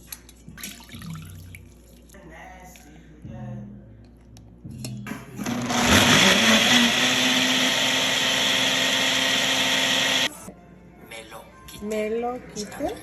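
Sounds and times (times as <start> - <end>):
blender motor running: 5.4 - 10.5.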